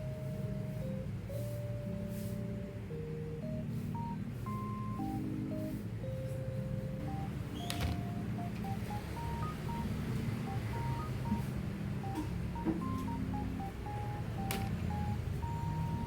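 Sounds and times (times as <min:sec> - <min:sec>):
beep-like electronic melody: 0:00.0 - 0:16.0.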